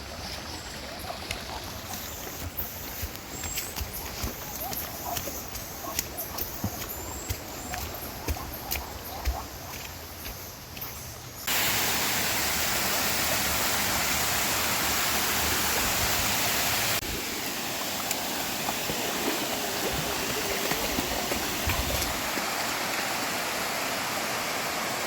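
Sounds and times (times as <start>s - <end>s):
water rushing: 11.4s - 25.0s.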